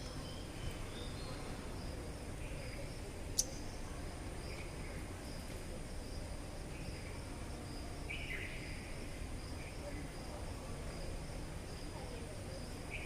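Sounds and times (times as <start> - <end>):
small bird chirping: 0.0 - 5.0.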